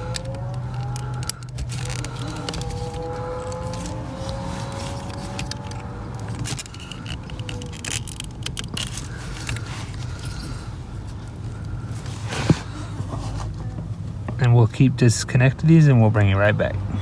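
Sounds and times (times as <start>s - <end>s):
plastic connectors clicking and rattling: 0.0s - 10.6s
steady low hum: 0.0s - 17.0s.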